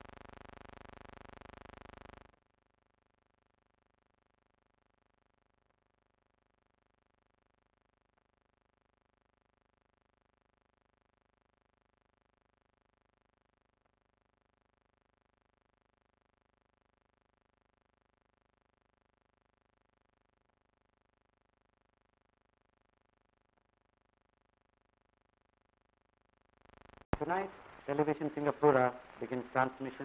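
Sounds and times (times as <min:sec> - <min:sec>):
faint film soundtrack hum: 0:26.7 - 0:30.0.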